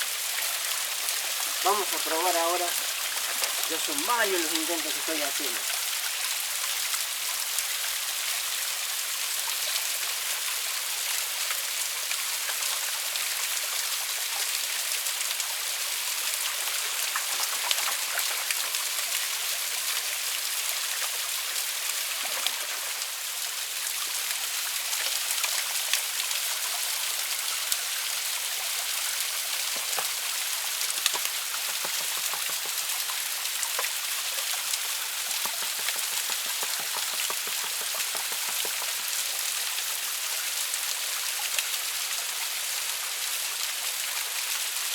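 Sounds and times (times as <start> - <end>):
water splashing over rocks: 0.0 - 42.7
sharp ticks: 30.9 - 32.9, 35.2 - 39.0.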